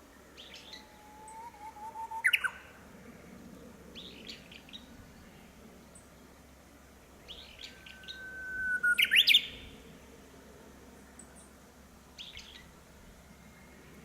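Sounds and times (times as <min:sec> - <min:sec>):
bird whistling song: 0:00.4 - 0:02.6, 0:07.3 - 0:09.7.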